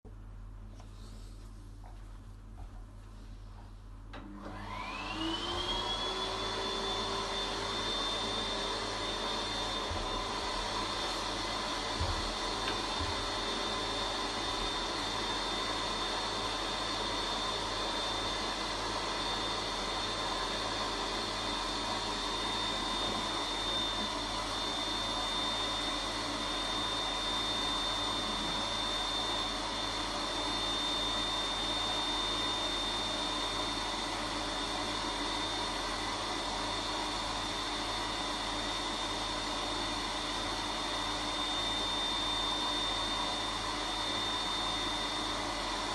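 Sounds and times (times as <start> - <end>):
vacuum cleaner running: 0.8 - 45.9.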